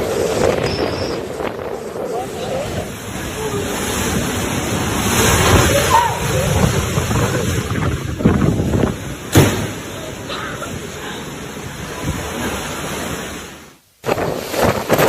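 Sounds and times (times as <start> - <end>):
wind and rain rushing: 0.0 - 15.0
sharp bang: 9.3 - 9.9.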